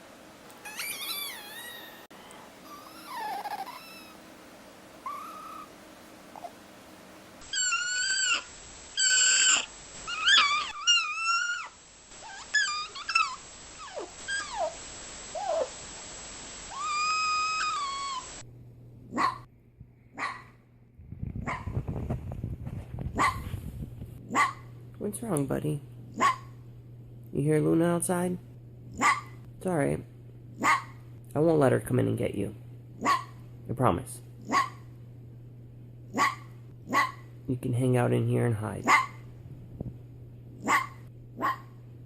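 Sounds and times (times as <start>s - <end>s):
fox whining and screaming calls: 0.6s - 4.2s, 5.0s - 5.8s, 7.4s - 15.8s, 16.7s - 18.4s.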